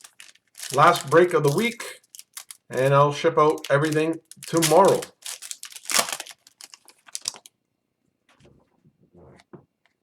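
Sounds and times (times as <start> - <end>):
foil wrappers crinkling: 0.0 - 7.5.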